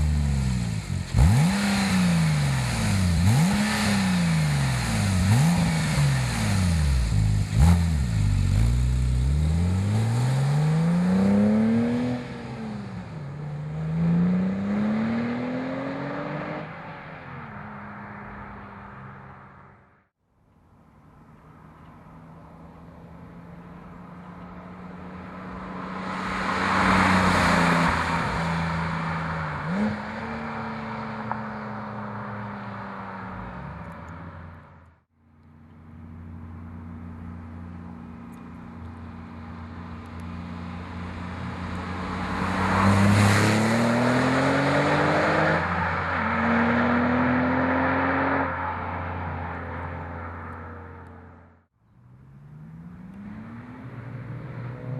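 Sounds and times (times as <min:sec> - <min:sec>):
sports car accelerating hard: 0:00.0 - 0:19.2, 0:39.6 - 0:51.3.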